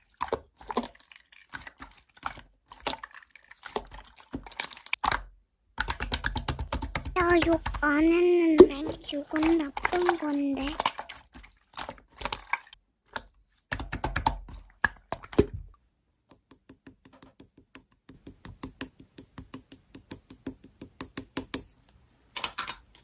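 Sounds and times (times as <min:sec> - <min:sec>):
irregular noises: 0:00.0 - 0:23.0
rapid keyboard typing: 0:05.8 - 0:10.8.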